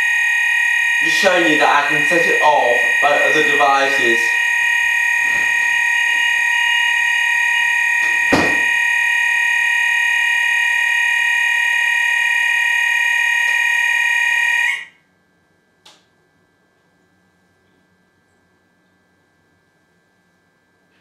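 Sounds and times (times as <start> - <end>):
fire alarm continuous tone: 0.0 - 15.0
knock: 8.3 - 8.7.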